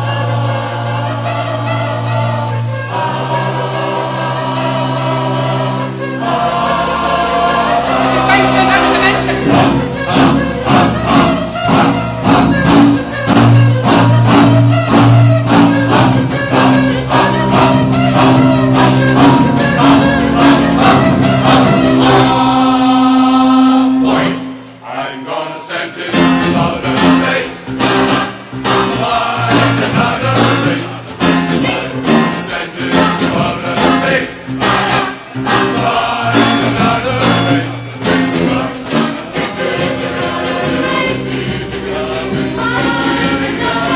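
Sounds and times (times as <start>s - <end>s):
large choir singing: 0.0s - 43.9s
percussion band drumming: 7.0s - 22.7s, 26.1s - 43.9s.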